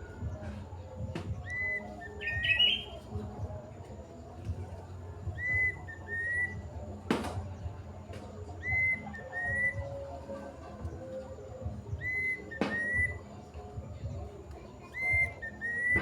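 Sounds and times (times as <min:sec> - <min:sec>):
cuckoo whistling: 0:01.4 - 0:03.0, 0:05.4 - 0:06.7, 0:08.6 - 0:10.0, 0:12.0 - 0:13.2, 0:14.9 - 0:16.0.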